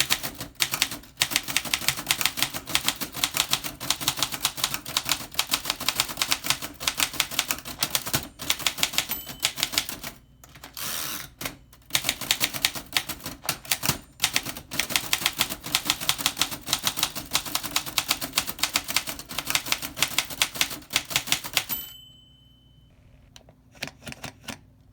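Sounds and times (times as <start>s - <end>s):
typewriter key strikes: 0.0s - 22.0s
brief ringing tone: 21.7s - 23.0s.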